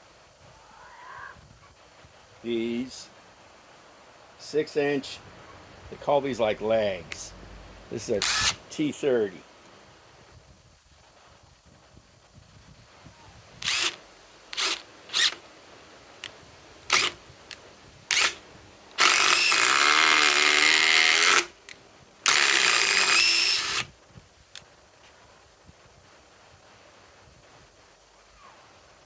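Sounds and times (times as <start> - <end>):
impact driver driving screw into wood: 22.3 - 23.9.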